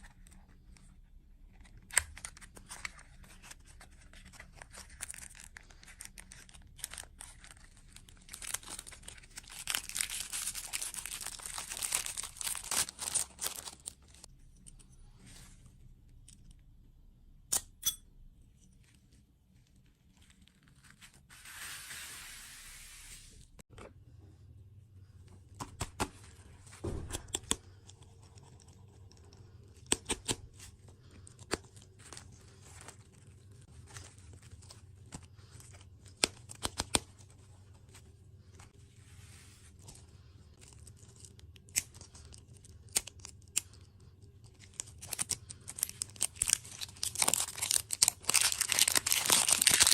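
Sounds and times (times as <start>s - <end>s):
packaging tearing and crinkling: 4.2s - 14.3s, 44.5s - 49.9s.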